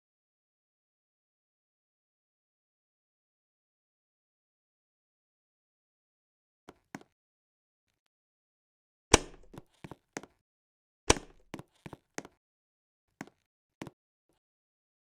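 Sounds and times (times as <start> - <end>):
sharp knocks and clicks: 9.1 - 9.6, 11.1 - 11.6.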